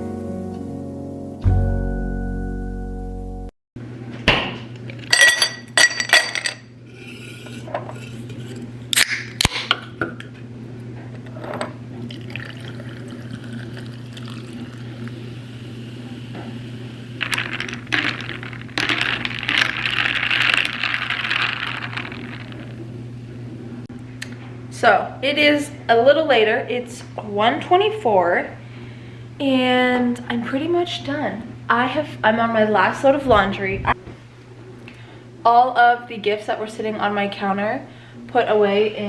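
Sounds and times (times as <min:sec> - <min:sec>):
steady low hum: 0:04.8 - 0:39.0
glassware and dishes clinking: 0:05.1 - 0:06.7
water pouring: 0:12.0 - 0:15.6, 0:17.2 - 0:22.8.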